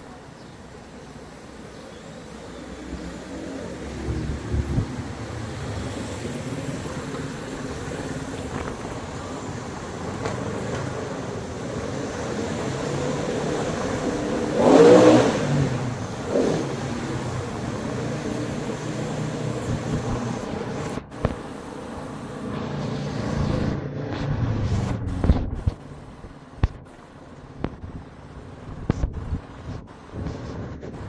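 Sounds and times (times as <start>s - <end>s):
road noise: 0.0s - 31.0s
car engine: 3.6s - 28.5s.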